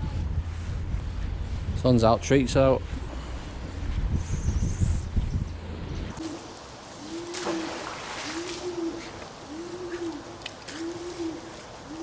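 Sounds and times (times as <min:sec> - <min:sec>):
pigeon cooing: 0:06.2 - 0:12.0.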